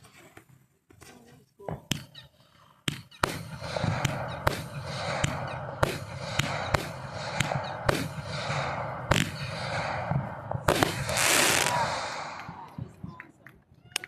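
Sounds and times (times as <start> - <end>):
fireworks bangs: 2.8 - 14.0
fireworks crackling: 3.2 - 14.0.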